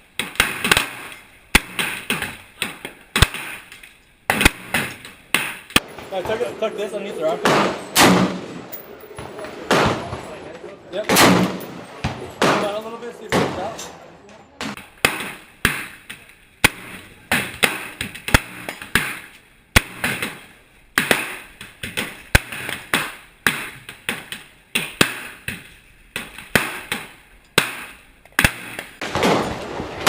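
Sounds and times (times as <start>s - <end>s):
gunshots with echo: 4.3s - 10.4s, 11.0s - 14.0s, 14.6s - 24.2s, 26.5s - 30.0s.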